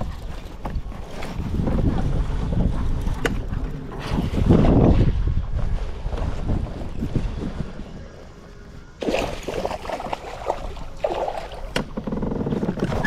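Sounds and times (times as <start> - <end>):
water noise around kayak: 0.0 - 13.0
wind: 0.0 - 13.0
small knocks and splashes: 9.0 - 12.0.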